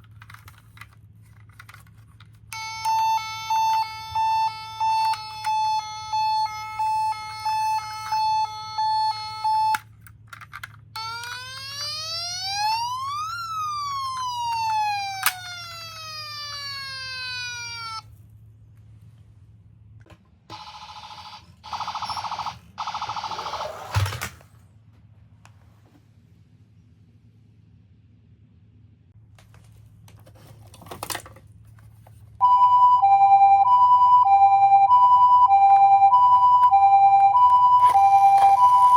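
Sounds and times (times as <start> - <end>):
toy electronic siren: 2.5 - 9.9, 11.0 - 18.1, 20.5 - 24.1, 32.4 - 38.9.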